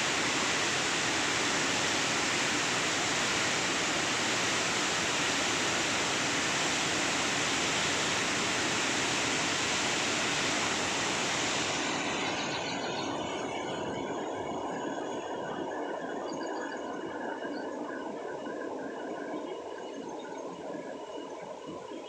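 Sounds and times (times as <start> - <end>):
water rushing through spillway: 0.0 - 12.4.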